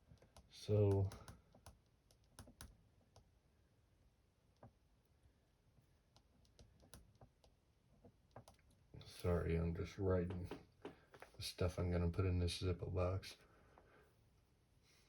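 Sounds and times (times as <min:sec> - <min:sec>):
typing on a computer keyboard: 0:00.2 - 0:03.2.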